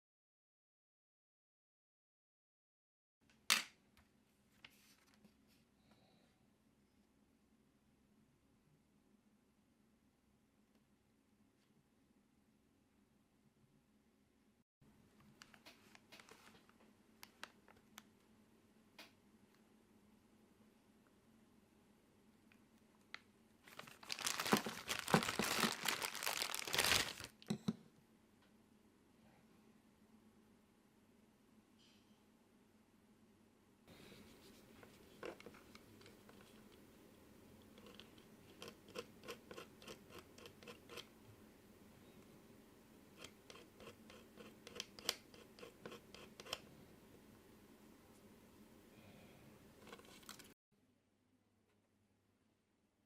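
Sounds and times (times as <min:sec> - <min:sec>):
crinkling and rustling: 0:04.5 - 0:05.6, 0:15.2 - 0:18.2, 0:22.9 - 0:27.4, 0:34.3 - 0:36.8, 0:49.8 - 0:50.6.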